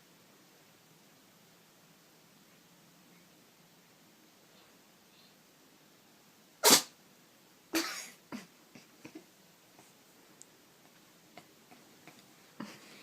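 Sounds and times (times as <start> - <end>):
soft short puff: 6.6 - 6.9
cat sneezing: 6.6 - 7.0, 7.7 - 8.5.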